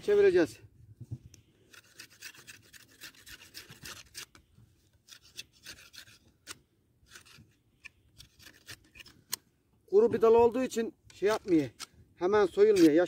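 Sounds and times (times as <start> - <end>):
knife scraping wooden branch: 1.6 - 9.4, 11.2 - 13.0.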